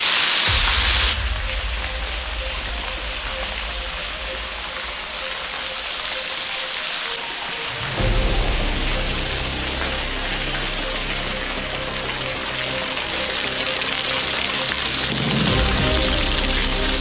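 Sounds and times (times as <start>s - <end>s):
waterfall rushing: 0.0s - 17.0s
deep low rumble: 0.5s - 5.6s, 8.0s - 17.0s.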